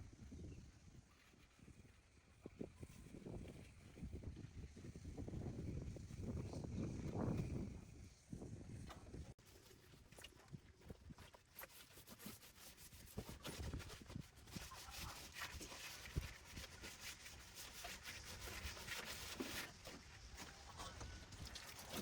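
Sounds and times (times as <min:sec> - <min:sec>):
rubbing and scraping: 0:09.4 - 0:22.0.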